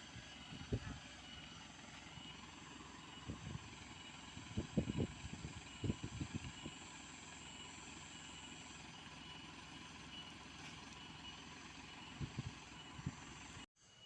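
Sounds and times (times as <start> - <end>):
truck diesel engine running: 0.0 - 14.0.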